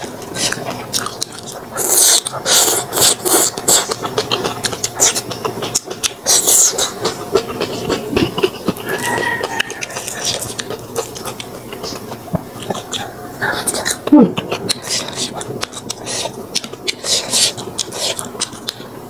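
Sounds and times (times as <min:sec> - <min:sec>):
slurping noodles: 0:00.3 - 0:12.0
wet chewing and lip smacks: 0:00.3 - 0:18.8.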